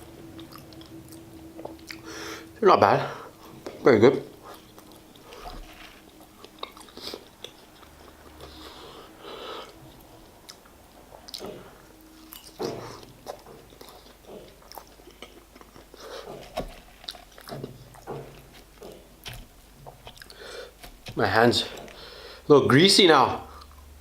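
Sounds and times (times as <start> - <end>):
chewing and biting fries: 4.4 - 22.4.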